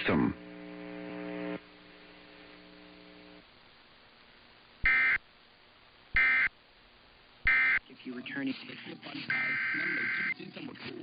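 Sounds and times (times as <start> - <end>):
low steady hum: 0.0 - 9.8
buzzy digital data squawks: 4.8 - 5.2, 6.2 - 6.5, 7.4 - 7.9, 8.9 - 10.5.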